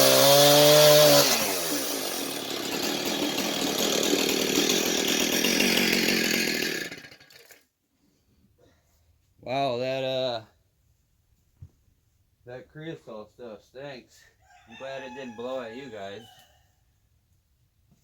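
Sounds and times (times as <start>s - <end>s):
engine-driven saw cutting wood: 0.0s - 7.6s.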